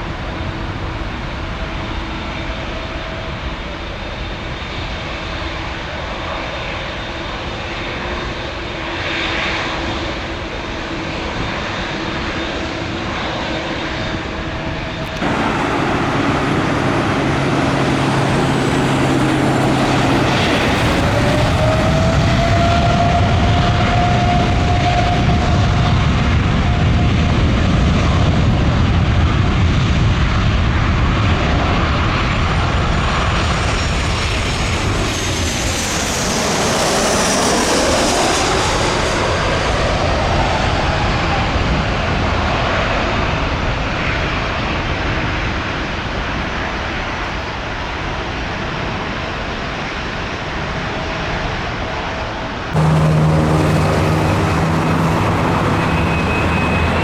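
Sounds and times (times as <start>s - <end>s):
jet airliner passing: 0.0s - 57.0s
rising engine whine: 13.1s - 28.2s, 52.6s - 57.0s.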